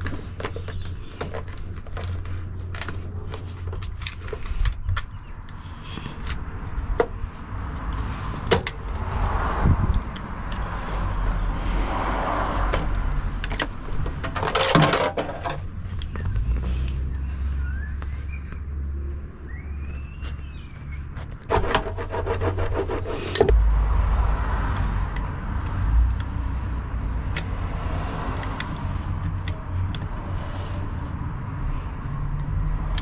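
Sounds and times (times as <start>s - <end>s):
steady low rumble: 23.5s - 31.2s.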